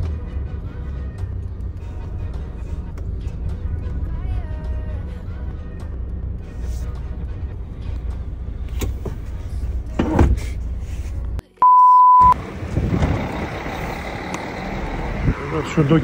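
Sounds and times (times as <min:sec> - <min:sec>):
outdoor vehicle noise: 0:00.0 - 0:16.0
electronic beep: 0:11.6 - 0:12.4
truck engine idling: 0:12.3 - 0:16.0.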